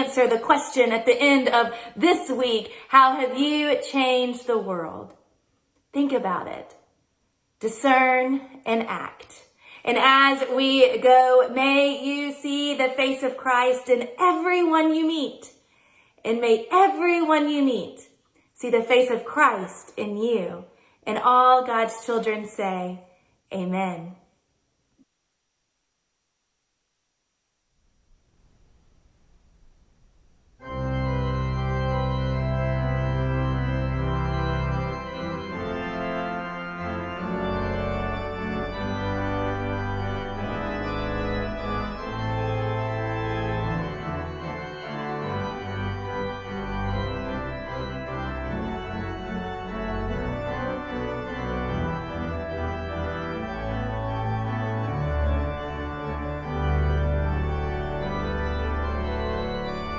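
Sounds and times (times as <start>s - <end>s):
organ playing chords: 30.6s - 59.9s.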